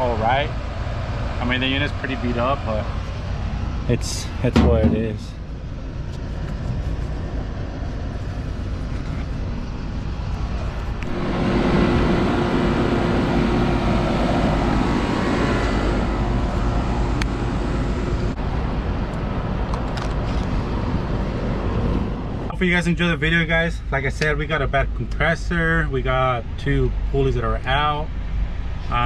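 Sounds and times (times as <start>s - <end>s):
low mechanical rumble: 0.0s - 29.0s
rushing noise with hum: 0.0s - 29.0s.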